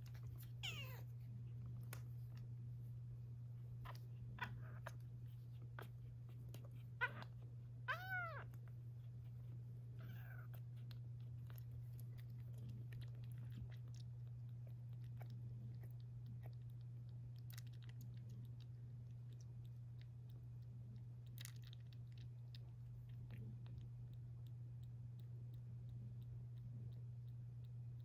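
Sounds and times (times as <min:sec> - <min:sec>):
steady low hum: 0:00.0 - 0:28.0
kitten meowing: 0:00.6 - 0:01.1, 0:07.0 - 0:08.5.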